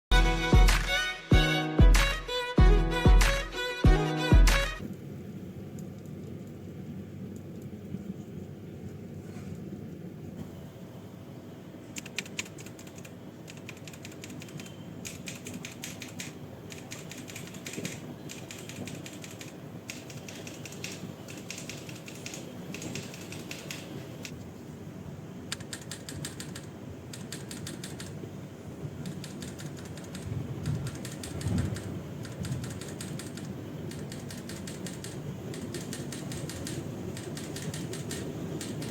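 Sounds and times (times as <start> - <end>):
low background hum: 0.1 - 38.9
mechanical keyboard typing: 11.9 - 24.4, 25.5 - 28.2, 29.0 - 38.9.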